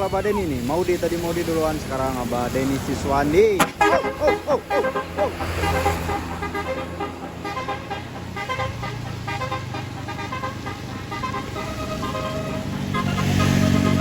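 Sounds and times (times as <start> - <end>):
low hum of bus engine: 0.0 - 14.0
musical air horn playing a tune: 3.6 - 14.0.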